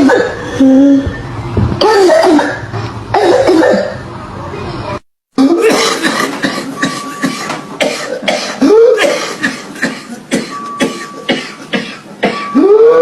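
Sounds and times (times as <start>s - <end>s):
person coughing: 0.0s - 0.5s, 1.8s - 4.0s, 5.4s - 12.7s
voiced rising and falling cough: 5.4s - 12.6s.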